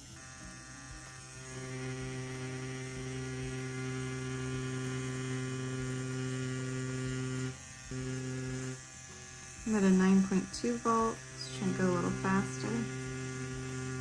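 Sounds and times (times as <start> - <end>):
tattoo pen humming: 0.0 - 14.0.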